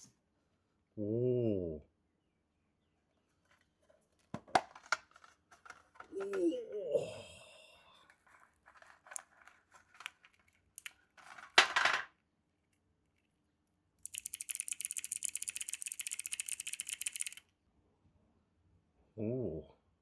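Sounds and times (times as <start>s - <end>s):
plastic keycaps clicking: 14.0s - 17.4s.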